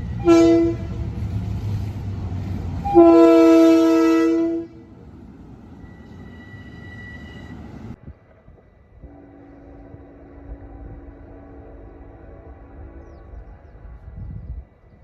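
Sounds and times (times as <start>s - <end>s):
train horn blast: 0.0s - 1.3s, 2.8s - 4.9s, 9.0s - 13.8s
passing train rumble: 0.0s - 15.0s.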